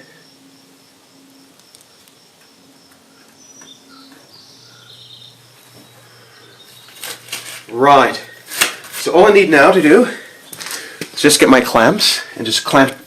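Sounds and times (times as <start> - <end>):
faint bird chirps: 0.0 - 7.2
low steady hum: 0.0 - 13.0.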